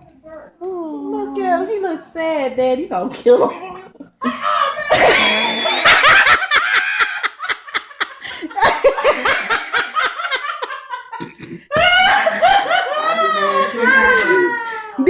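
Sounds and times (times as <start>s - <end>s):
people laughing hard: 4.0s - 15.0s.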